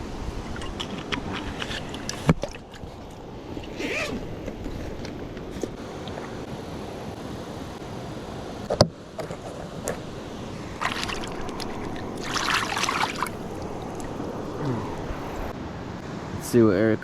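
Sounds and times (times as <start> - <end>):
wind noise: 0.0 - 15.6
water wash: 9.8 - 15.5.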